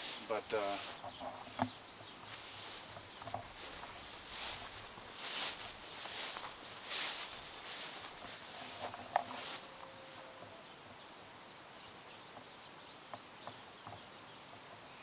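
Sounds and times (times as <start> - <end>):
rustling: 0.0 - 10.3
insect pulsing chirp: 0.0 - 15.0
insects high-pitched whine: 0.0 - 15.0.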